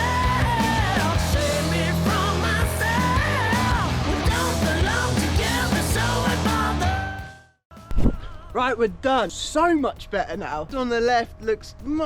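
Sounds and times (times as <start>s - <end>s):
rock music with singing: 0.0s - 12.0s.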